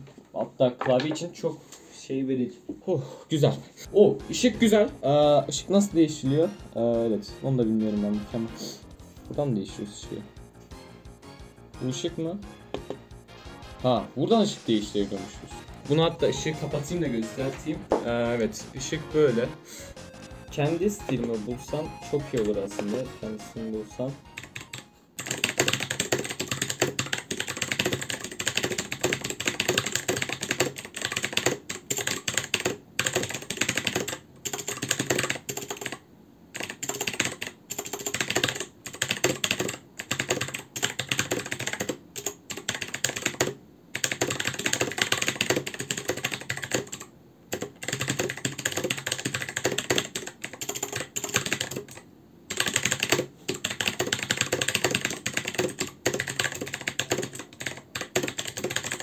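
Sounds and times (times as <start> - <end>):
fast typing on clicky keyboard: 15.1 - 19.1, 19.8 - 59.0.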